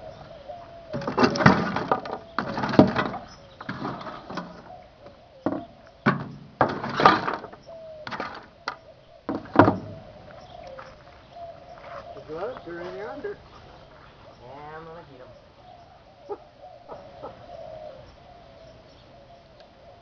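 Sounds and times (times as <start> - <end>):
sharp knocks and bangs: 0.9 - 4.7, 5.4 - 10.1.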